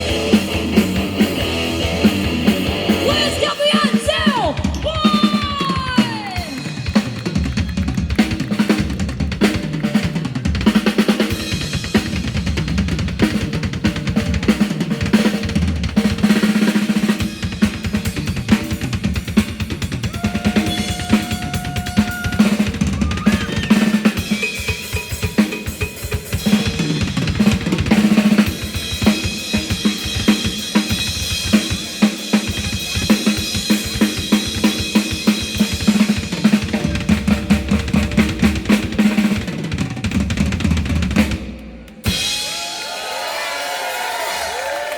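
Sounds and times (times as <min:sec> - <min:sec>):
drum kit solo: 0:00.0 - 0:43.2.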